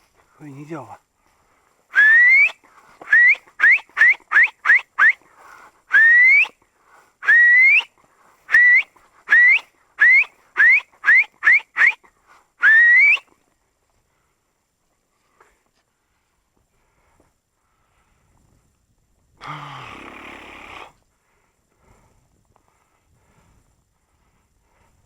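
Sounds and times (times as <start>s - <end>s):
loud rising whistles: 1.9s - 5.2s, 5.9s - 6.5s, 7.2s - 7.9s, 8.5s - 12.0s, 12.6s - 13.3s.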